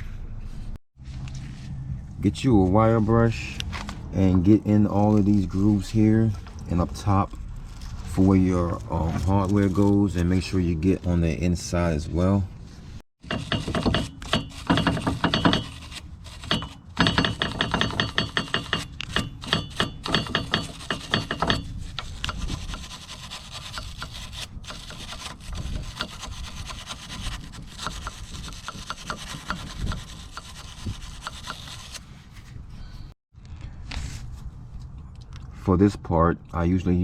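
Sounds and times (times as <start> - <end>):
wire brush scrubbing metal: 13.2 - 32.1.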